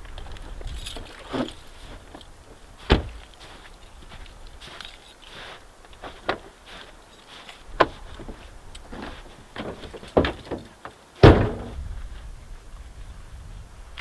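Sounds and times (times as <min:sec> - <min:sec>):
sharp knocks and clunks: 0:02.9 - 0:03.2, 0:07.8 - 0:11.9.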